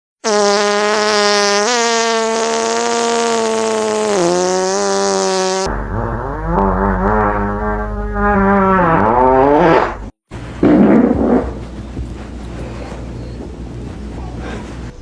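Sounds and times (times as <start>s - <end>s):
buzzy fake fart sound: 0.2s - 12.0s.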